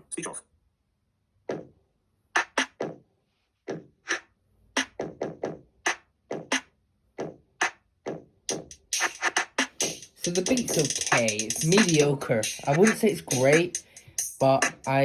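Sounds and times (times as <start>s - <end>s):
electronic beat drum hits: 8.5s - 13.9s.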